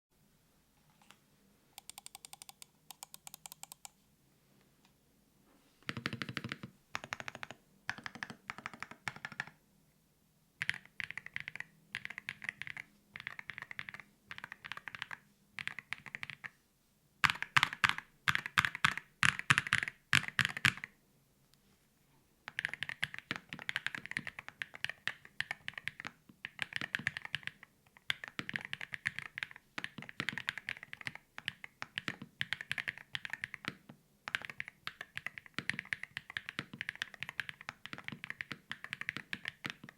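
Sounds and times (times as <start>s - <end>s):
keyboard keystroke clicks: 1.8s - 3.9s.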